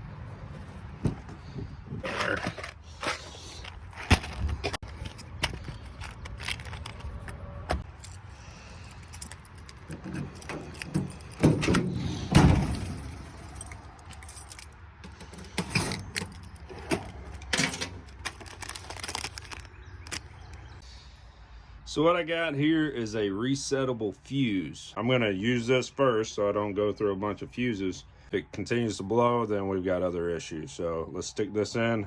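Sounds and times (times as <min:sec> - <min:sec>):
metal parts jingling: 0:02.0 - 0:20.6.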